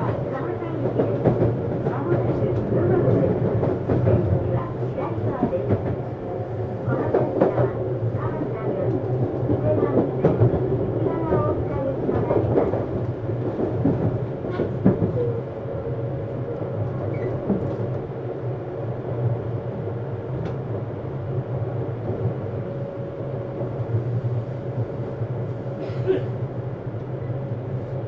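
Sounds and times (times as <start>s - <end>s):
train wheels rumbling: 0.0s - 19.4s.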